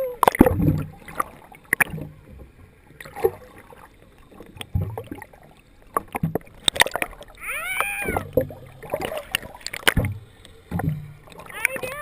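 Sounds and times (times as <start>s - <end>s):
water splashing against boat hull: 0.0s - 12.0s
sharp knocks and clicks: 9.3s - 11.4s.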